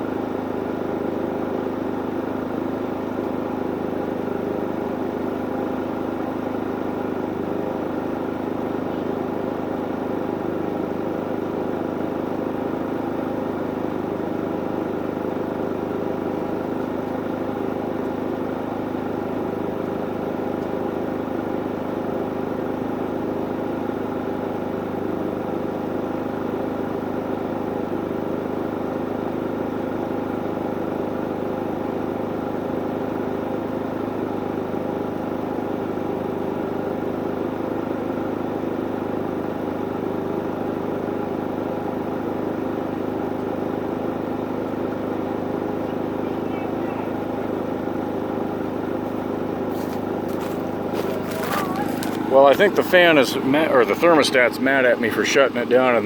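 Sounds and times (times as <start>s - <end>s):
generator running steadily: 0.0s - 56.0s.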